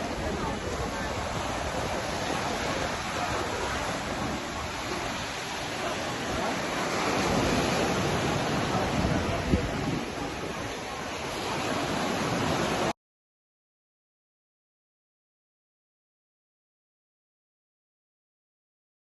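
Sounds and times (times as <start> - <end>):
sea surf washing ashore: 0.0 - 12.9.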